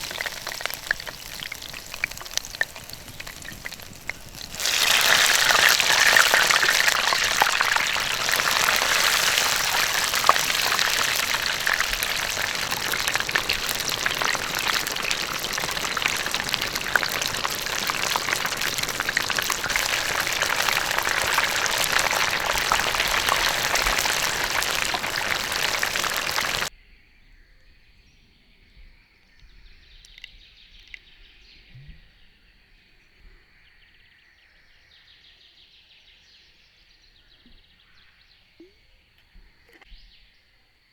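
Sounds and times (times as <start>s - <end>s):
food sizzling over embers: 0.0s - 26.7s.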